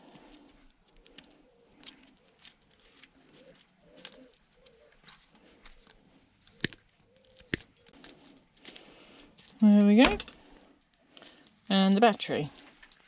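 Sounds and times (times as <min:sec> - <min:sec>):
bird cooing: 0:03.2 - 0:05.4, 0:07.0 - 0:08.0
hand tool clicks: 0:06.6 - 0:06.8, 0:07.4 - 0:07.7
plastic parts snapping: 0:06.6 - 0:07.7.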